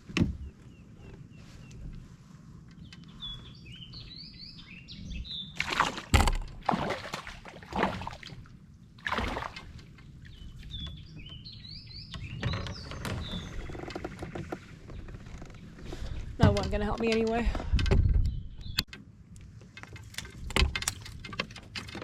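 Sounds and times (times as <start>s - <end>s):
birds singing in gliding chirps: 0.3s - 6.2s, 8.1s - 16.4s, 17.9s - 18.9s.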